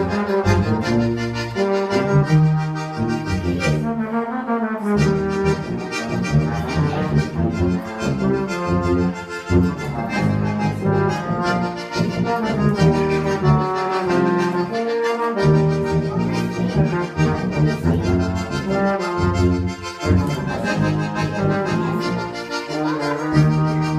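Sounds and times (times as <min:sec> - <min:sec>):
low bass part: 0:00.0 - 0:23.9
wind instrument melody: 0:00.0 - 0:23.9.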